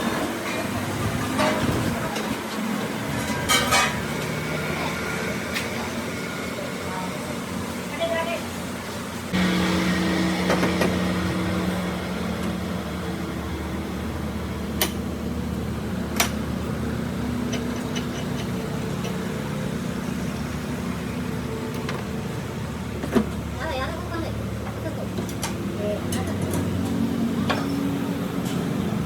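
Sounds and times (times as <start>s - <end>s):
machine motor humming: 9.3s - 17.3s.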